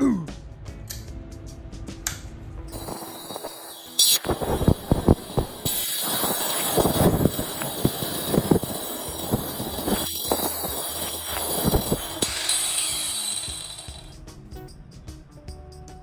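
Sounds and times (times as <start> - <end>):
scraping clatter: 2.8 - 14.1
steady hiss: 2.8 - 14.1.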